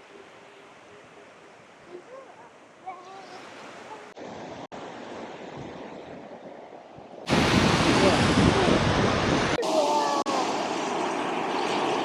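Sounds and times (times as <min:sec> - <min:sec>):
wind noise on microphone: 0:04.3 - 0:09.6
ocean surf washing onto beach: 0:07.0 - 0:12.0.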